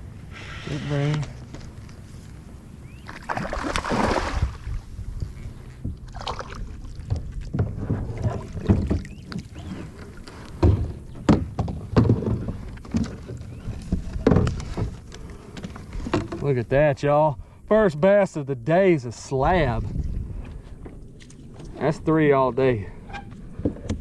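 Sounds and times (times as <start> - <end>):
water movement: 0.2 - 16.5
knocks and thumps on a kayak: 5.7 - 16.5.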